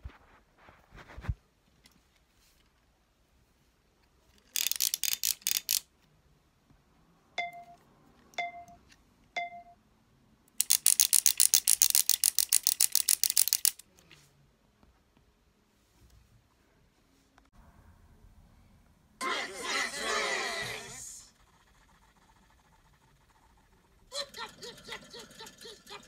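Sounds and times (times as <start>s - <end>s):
ringing pings: 7.4s - 7.8s, 8.4s - 8.8s, 9.4s - 9.8s.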